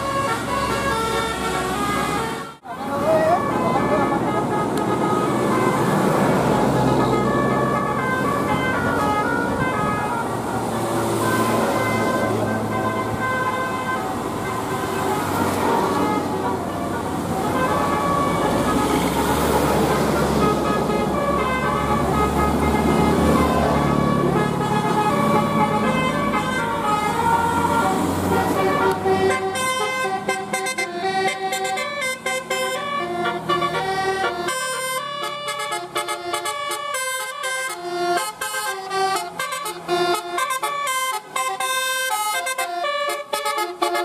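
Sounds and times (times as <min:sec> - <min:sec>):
bus engine rumble: 0:00.0 - 0:44.0
bus horn playing melody: 0:00.0 - 0:44.0.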